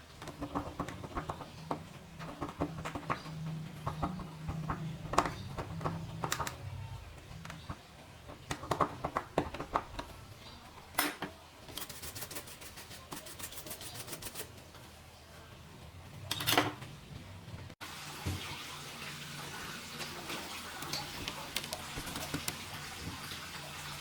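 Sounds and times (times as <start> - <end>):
small parts clicking and tapping: 0.2 - 6.6.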